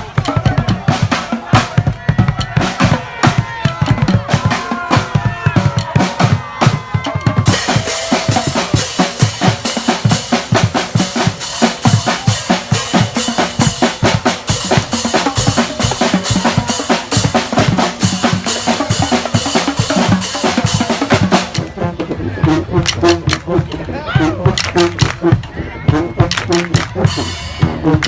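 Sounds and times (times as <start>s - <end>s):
bass drum and snare beat: 0.0s - 28.0s.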